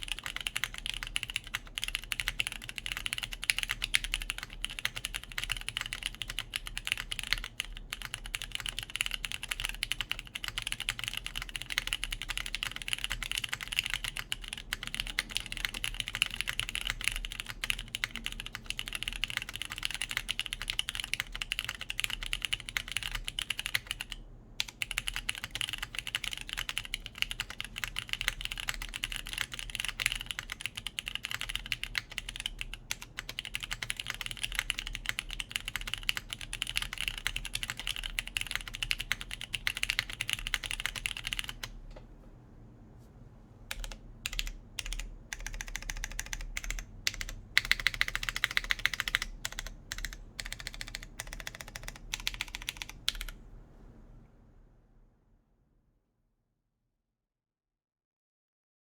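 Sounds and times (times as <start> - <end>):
mechanical keyboard key clacks: 43.7 - 53.4.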